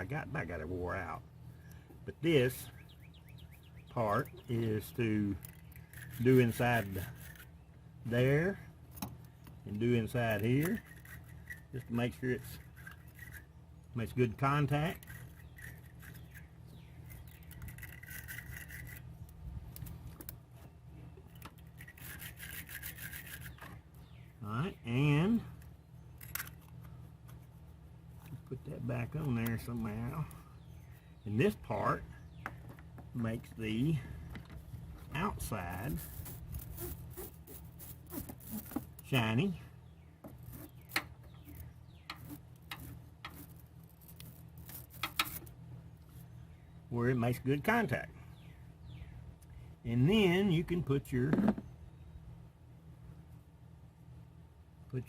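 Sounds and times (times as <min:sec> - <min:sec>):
steady low hum: 0:00.0 - 0:55.0
wire brush scrubbing metal: 0:21.7 - 0:23.6, 0:35.2 - 0:39.3, 0:40.3 - 0:45.5.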